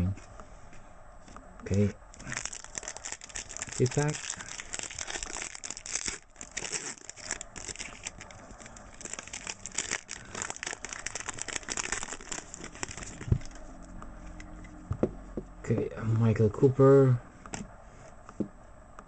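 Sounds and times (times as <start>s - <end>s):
plastic wrapper crinkling: 2.1s - 13.7s.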